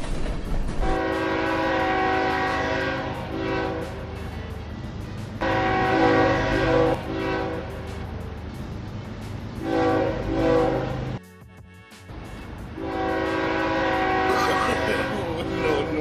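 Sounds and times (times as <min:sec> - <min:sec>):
steady low rumble: 0:00.0 - 0:16.0
train horn blasts: 0:00.8 - 0:04.7, 0:05.4 - 0:08.4, 0:09.6 - 0:11.2, 0:11.9 - 0:16.0.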